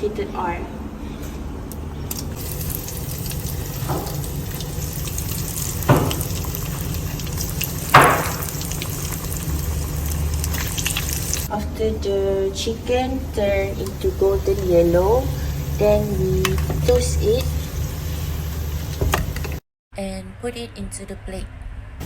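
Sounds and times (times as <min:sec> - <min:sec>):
chicken frying in oil: 0:02.1 - 0:11.5, 0:13.2 - 0:19.6.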